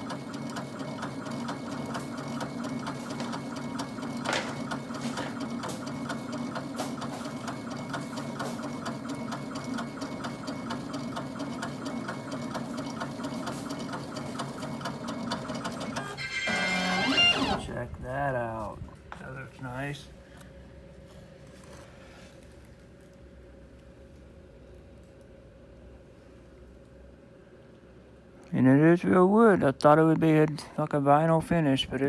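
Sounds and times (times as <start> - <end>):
constant hum: 12.8 - 32.0
laser engraver motors buzzing: 15.8 - 17.7.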